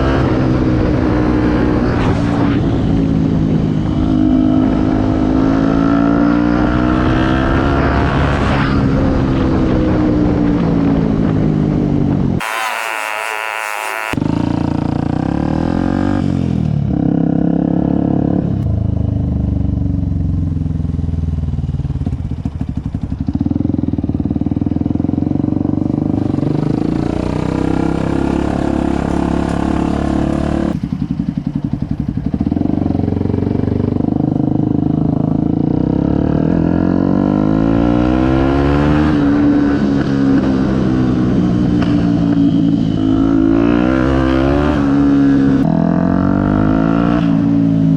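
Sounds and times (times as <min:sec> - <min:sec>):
motorcycle engine revving: 0:12.4 - 0:47.9.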